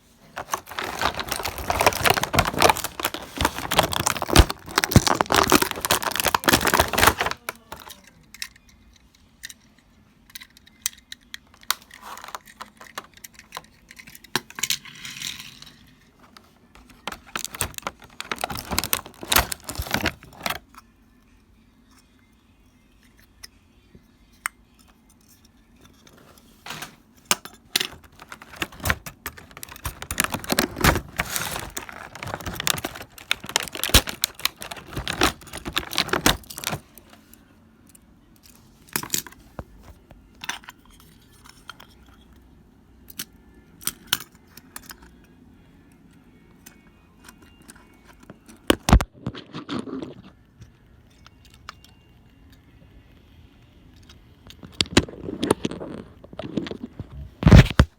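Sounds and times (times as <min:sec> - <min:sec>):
plastic toy parts clicking: 0:00.4 - 0:15.8, 0:16.8 - 0:20.8, 0:27.3 - 0:36.8, 0:43.1 - 0:45.2.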